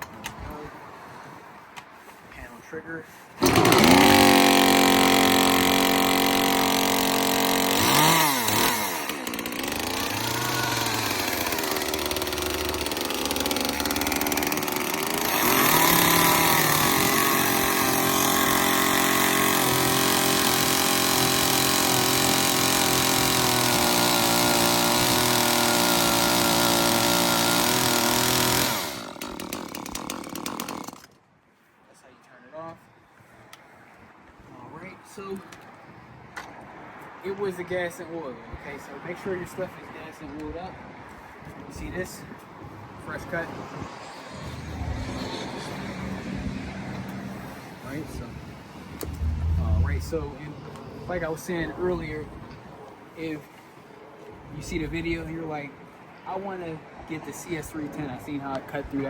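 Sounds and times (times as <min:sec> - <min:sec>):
chainsaw cutting wood: 0:03.4 - 0:31.2.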